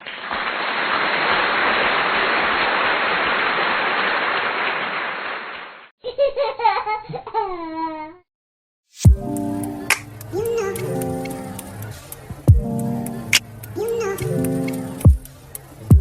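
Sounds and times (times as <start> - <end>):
steady hiss: 0.0 - 5.0, 9.1 - 16.0
young child giggling: 6.0 - 8.2.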